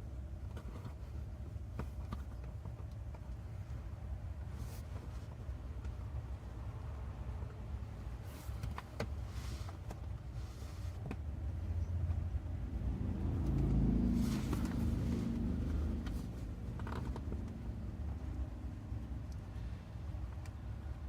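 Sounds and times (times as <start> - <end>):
steady low rumble: 11.2 - 21.0
upholstery rustling: 13.9 - 18.3.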